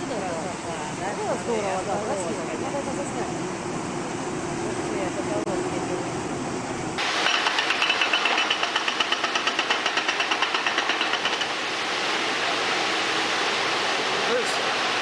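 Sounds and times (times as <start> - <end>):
steady rushing noise: 0.0 - 15.0
heavy machinery knocking: 7.0 - 11.5.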